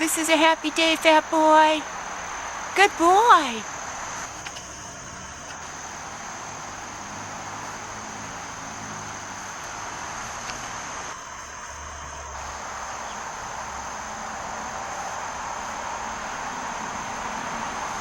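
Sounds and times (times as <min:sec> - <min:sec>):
insects buzzing: 0:00.0 - 0:18.0
outdoor hiss: 0:00.0 - 0:18.0.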